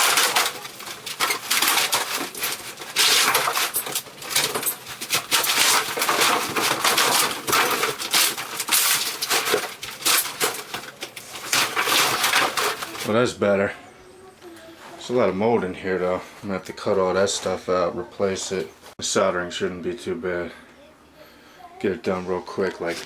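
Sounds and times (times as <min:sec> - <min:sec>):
knocks and clatter: 0:00.0 - 0:13.1
scraping and crunching of breaking material: 0:00.0 - 0:13.2.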